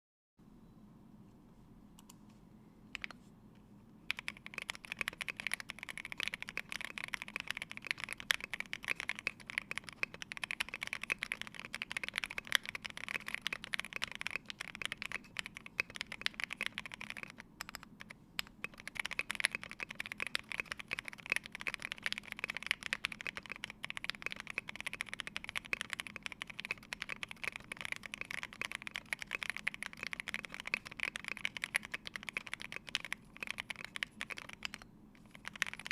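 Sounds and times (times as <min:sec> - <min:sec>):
mechanical keyboard typing clacks: 0:04.1 - 0:35.9.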